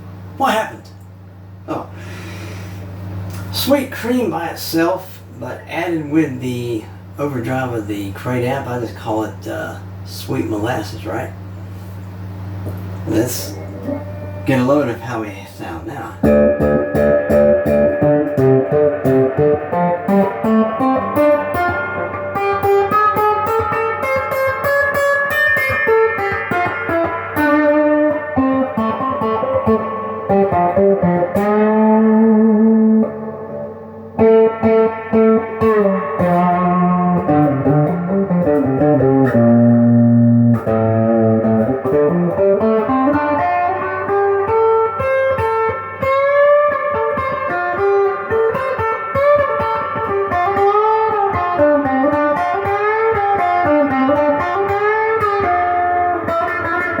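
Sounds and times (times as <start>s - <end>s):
distorted electric guitar lead: 12.6s - 14.8s, 16.2s - 57.0s.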